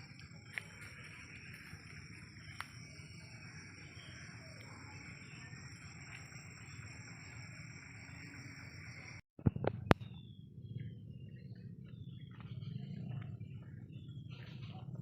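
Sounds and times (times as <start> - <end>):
high-pitched insect chorus: 0.0 - 9.2
low outdoor rumble: 0.0 - 15.0.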